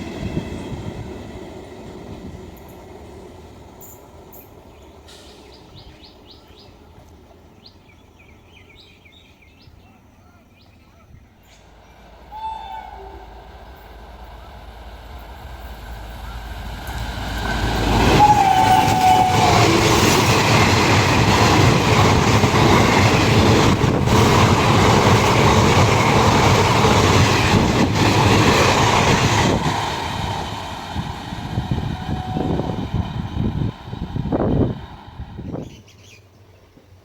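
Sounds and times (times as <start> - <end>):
train coaches clattering on rails: 0.0 - 7.5, 13.8 - 34.7
train horn blast: 12.3 - 13.5, 16.2 - 20.0, 31.8 - 33.0.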